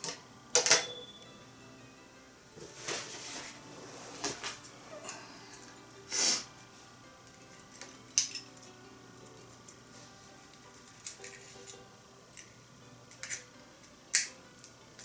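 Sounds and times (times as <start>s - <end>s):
pot and utensils clinking: 7.8s - 8.7s.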